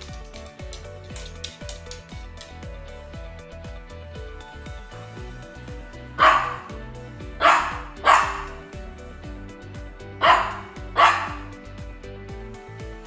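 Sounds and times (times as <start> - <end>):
background music: 0.0 - 13.0
dog making sharp sounds: 6.2 - 6.7, 7.4 - 8.6, 10.2 - 11.5.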